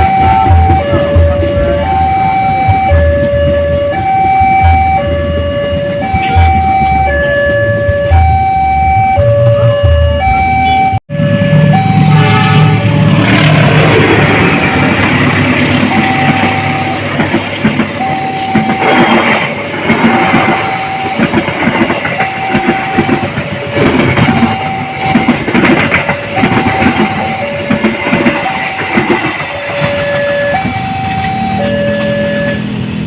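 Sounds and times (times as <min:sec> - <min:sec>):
electronic two-note warning tone: 0:00.0 - 0:13.5, 0:15.7 - 0:17.3, 0:18.0 - 0:32.9
train wheels clattering: 0:13.2 - 0:31.3.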